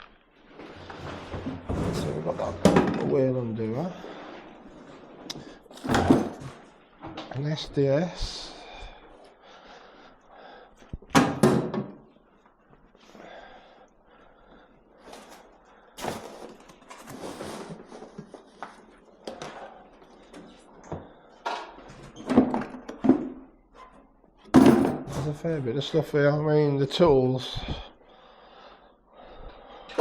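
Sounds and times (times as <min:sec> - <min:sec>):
scraping and rummaging: 0:00.4 - 0:07.4, 0:15.0 - 0:25.4
hard objects thudding: 0:01.2 - 0:03.4, 0:24.5 - 0:25.4.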